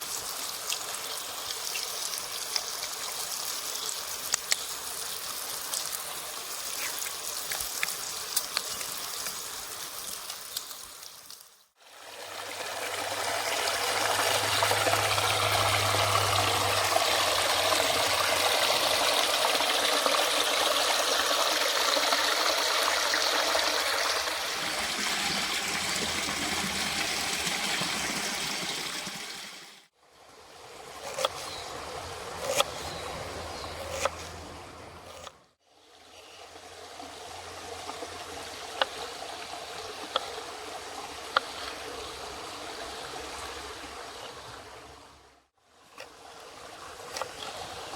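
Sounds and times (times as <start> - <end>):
stream water rushing: 11.8 - 35.1.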